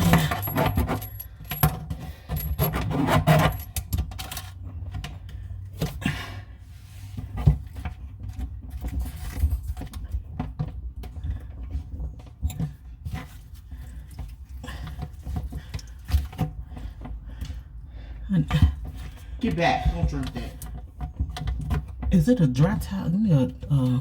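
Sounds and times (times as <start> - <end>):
metallic clinks and scrapes: 0.0 - 4.6, 8.7 - 10.0.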